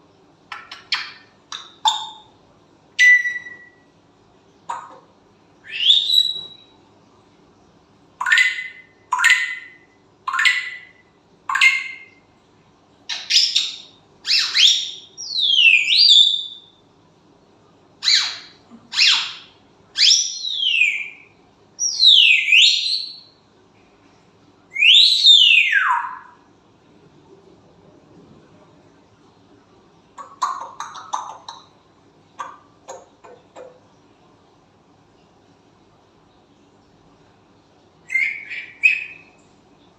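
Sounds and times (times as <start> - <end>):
parrot whistling and calling: 0.5 - 2.3, 3.0 - 3.8, 5.6 - 6.7, 8.2 - 12.2, 13.1 - 16.7, 18.0 - 23.3, 24.7 - 26.4, 38.0 - 39.3.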